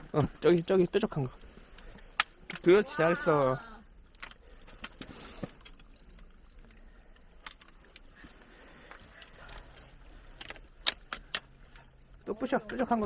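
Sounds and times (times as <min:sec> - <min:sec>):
dripping meltwater: 0:00.0 - 0:13.0
icicles tapped and breaking: 0:01.7 - 0:02.8, 0:08.9 - 0:13.0.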